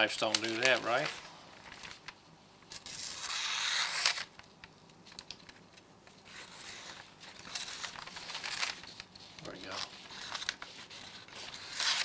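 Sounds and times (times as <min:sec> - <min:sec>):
paper crinkling: 0:00.0 - 0:12.0
knife slicing paper: 0:09.8 - 0:12.0.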